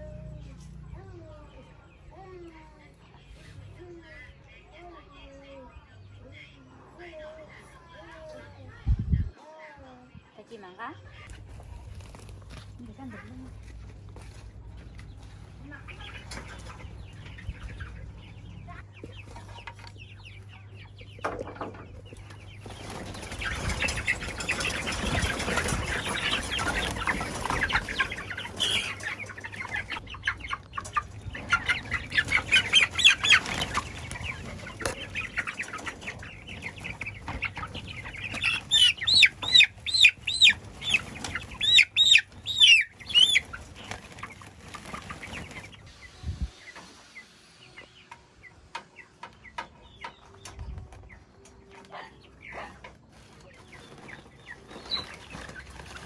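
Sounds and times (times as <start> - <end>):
chickens clucking: 0.0 - 9.3, 10.4 - 56.0
wings flapping: 22.0 - 45.9, 53.2 - 56.0
loud sharp chicken calls: 22.6 - 43.8.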